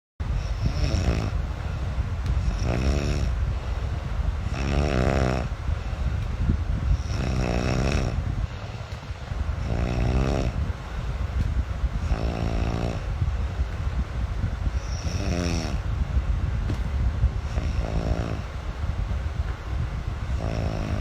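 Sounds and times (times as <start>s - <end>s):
steady low rumble: 0.2s - 21.0s
person snoring: 0.4s - 1.4s, 2.4s - 3.4s, 4.5s - 5.5s, 7.0s - 8.2s, 9.6s - 10.6s, 12.0s - 13.1s, 14.8s - 15.8s, 17.5s - 18.5s, 20.3s - 21.0s.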